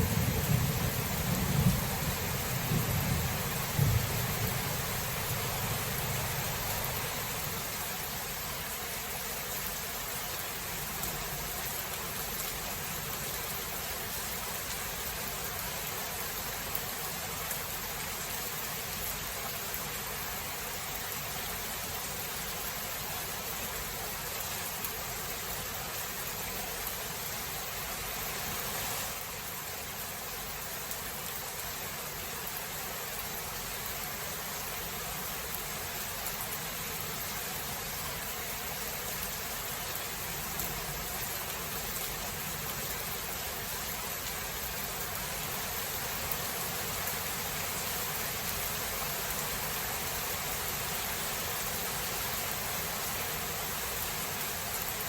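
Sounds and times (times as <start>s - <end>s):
thunder rumbling: 0.0s - 7.2s
steady rain: 0.0s - 55.0s.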